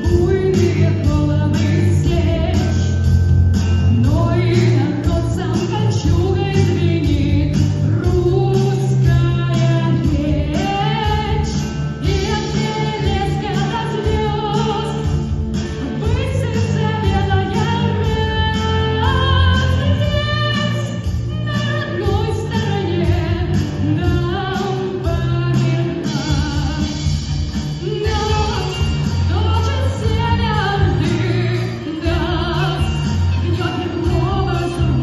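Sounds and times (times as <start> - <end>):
person singing: 4.0 - 15.2, 27.8 - 35.0
rock band playing live: 7.5 - 35.0.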